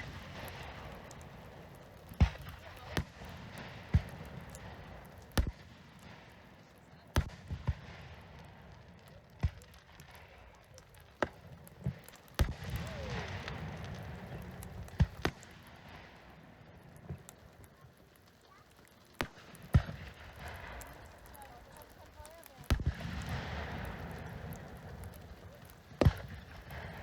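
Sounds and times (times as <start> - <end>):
fireworks bangs: 0.0 - 27.0.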